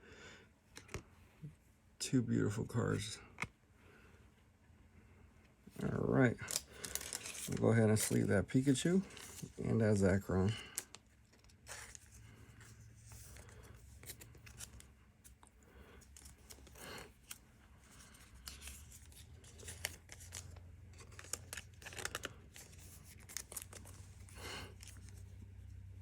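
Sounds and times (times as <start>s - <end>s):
packaging crinkling: 6.5s - 8.2s, 13.2s - 25.2s
cards sliding into plastic sleeves: 6.5s - 8.3s, 9.0s - 25.3s.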